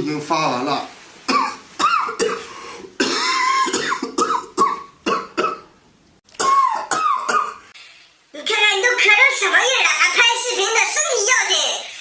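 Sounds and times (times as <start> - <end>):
person coughing harshly: 1.3 - 5.7, 6.4 - 7.7.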